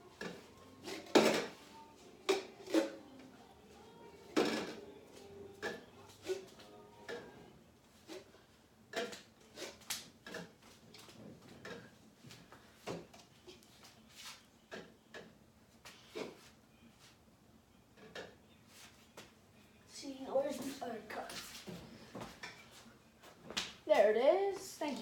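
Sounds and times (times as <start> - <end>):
cups clacking when stacked: 0.1 - 1.6, 2.2 - 3.0, 4.4 - 4.8, 8.0 - 11.9.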